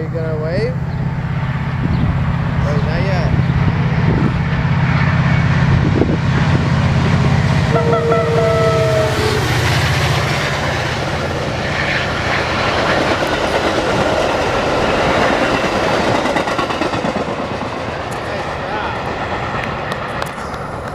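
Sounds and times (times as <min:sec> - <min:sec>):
diesel locomotive engine drone: 0:00.0 - 0:20.9
rumble and clatter of train cars: 0:00.0 - 0:20.9
train horn honk: 0:07.0 - 0:10.2.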